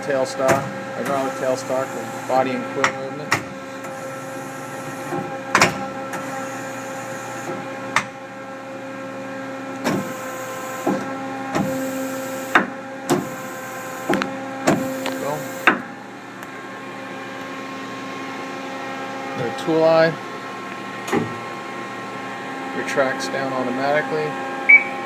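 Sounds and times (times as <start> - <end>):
machine hum: 0.0 - 25.0.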